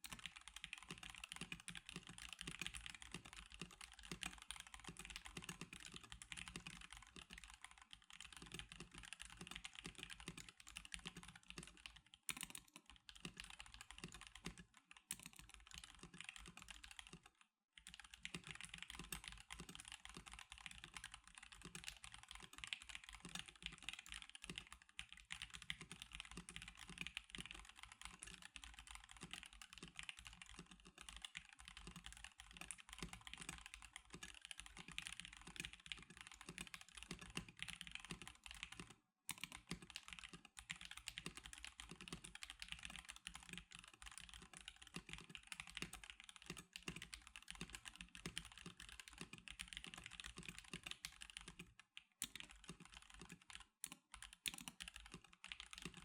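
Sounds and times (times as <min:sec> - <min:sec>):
fast mechanical keyboard typing: 0:00.0 - 0:56.0.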